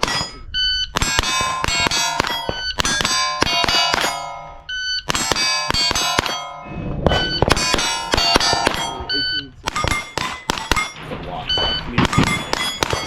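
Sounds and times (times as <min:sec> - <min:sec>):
rapid rifle shots: 0:00.0 - 0:13.0
steel targets ringing: 0:00.0 - 0:13.0
short electronic beep: 0:02.5 - 0:02.8, 0:06.6 - 0:07.5, 0:08.8 - 0:10.1, 0:10.8 - 0:12.4.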